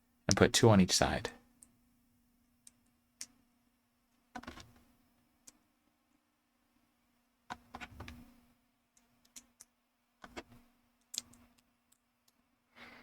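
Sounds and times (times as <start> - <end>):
plastic bricks clicking together: 9.0 - 12.4.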